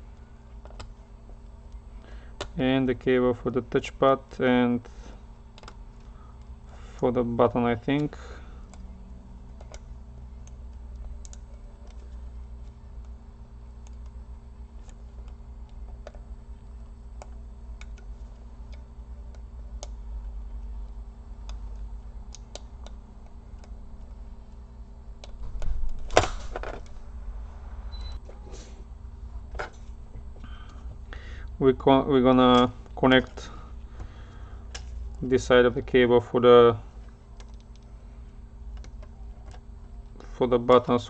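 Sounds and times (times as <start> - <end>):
low steady hum: 0.0 - 41.0
small plastic parts clicking: 5.5 - 6.5, 9.5 - 13.2.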